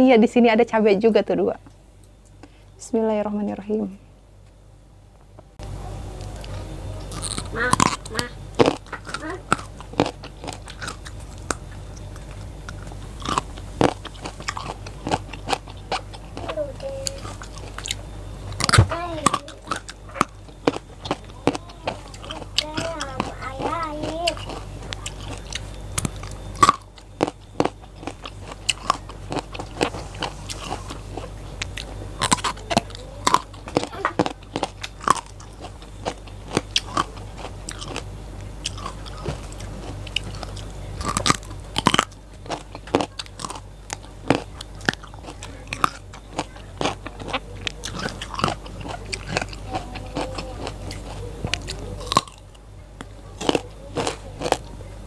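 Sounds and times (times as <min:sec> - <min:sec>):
crunching bites of raw vegetables: 0:06.2 - 0:16.5, 0:24.3 - 0:54.7
chewing: 0:06.2 - 0:54.8.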